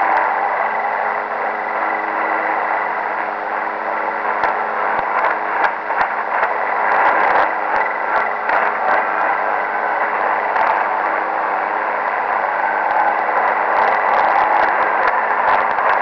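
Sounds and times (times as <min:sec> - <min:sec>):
distorted shortwave radio signal: 0:00.0 - 0:16.0
radio crackles: 0:00.0 - 0:16.0.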